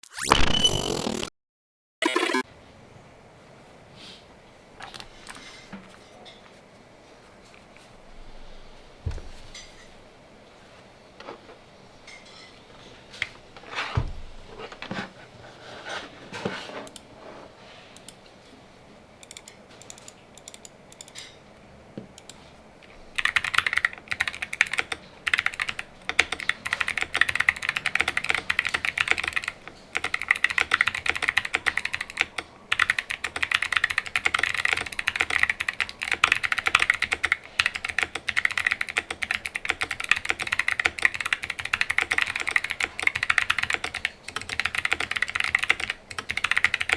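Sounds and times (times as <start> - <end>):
mechanical keyboard typing: 19.2 - 21.3, 23.2 - 46.9.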